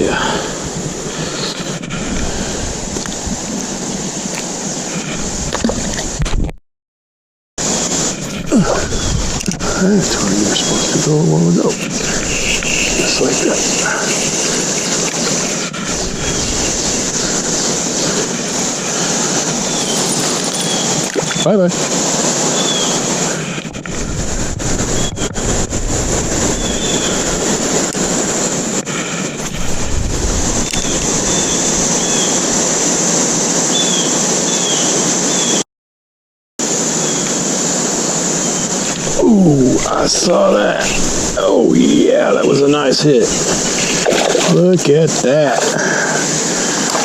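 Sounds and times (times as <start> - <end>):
river water rushing: 0.0 - 6.2, 7.6 - 35.6, 36.6 - 47.0
bright high hiss: 7.6 - 23.6, 36.6 - 47.0.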